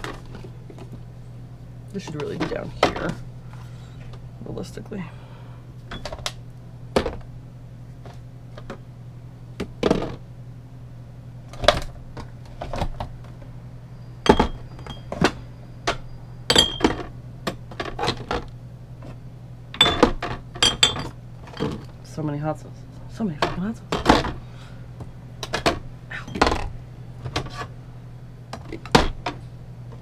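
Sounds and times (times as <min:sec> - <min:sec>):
glass clinks: 0:16.5 - 0:16.9, 0:20.6 - 0:21.1.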